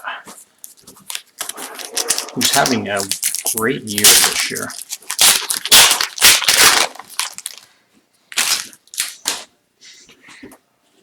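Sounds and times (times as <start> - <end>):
card pack crinkling: 0.6 - 7.7, 8.3 - 9.5.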